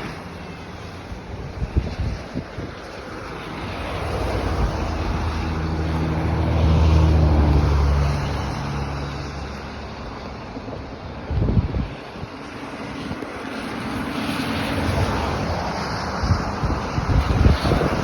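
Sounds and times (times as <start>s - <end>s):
wind noise on microphone: 0.0s - 18.0s
motor engine passing by: 3.5s - 10.0s.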